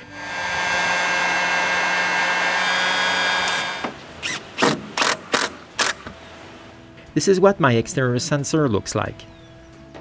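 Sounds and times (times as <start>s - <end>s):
heat gun fan whine: 0.0s - 4.0s
short sharp noisy bursts: 0.0s - 5.5s.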